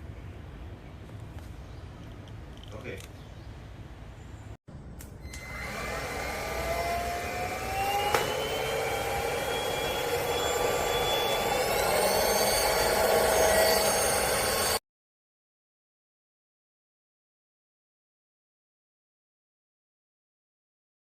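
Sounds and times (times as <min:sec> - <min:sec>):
vacuum motor whining: 0:05.2 - 0:14.8.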